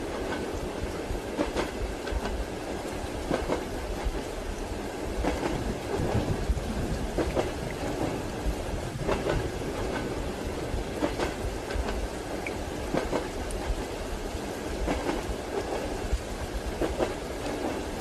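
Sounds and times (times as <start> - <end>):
train wheels clicking over rail joints: 0.0 - 4.3, 5.2 - 8.3, 9.0 - 13.9, 14.8 - 16.0, 16.7 - 18.0
steady low rumble: 4.0 - 12.2.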